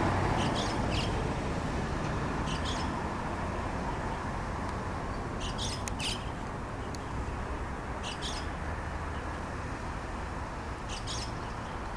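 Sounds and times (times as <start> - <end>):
starlings harsh grating calls: 0.4 - 1.2, 2.4 - 3.0, 5.4 - 6.3, 8.0 - 8.6, 10.9 - 11.5.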